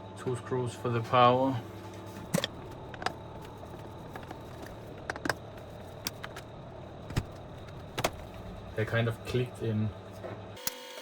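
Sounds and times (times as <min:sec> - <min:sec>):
faint steady hum: 0:00.0 - 0:11.0
sharp clicks and light knocks: 0:02.3 - 0:08.4.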